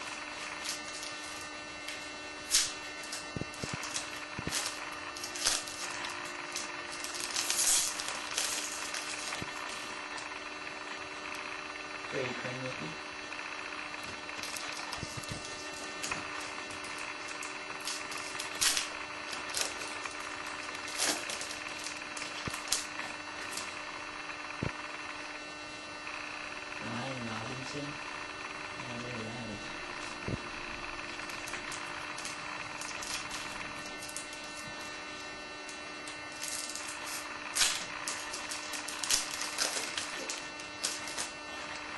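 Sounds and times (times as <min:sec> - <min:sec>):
low electrical hum: 0:00.0 - 0:41.9
cards swishing and rustling: 0:14.4 - 0:23.8.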